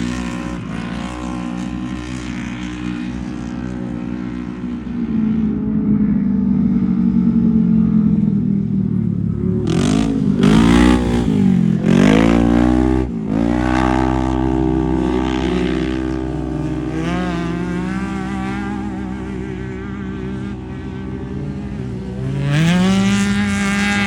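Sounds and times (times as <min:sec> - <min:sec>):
engine revving: 0:09.5 - 0:24.0.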